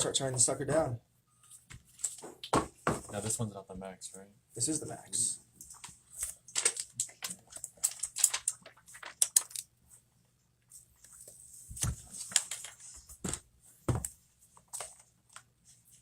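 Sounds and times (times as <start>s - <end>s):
packaging clicks and rustles: 6.2s - 9.7s.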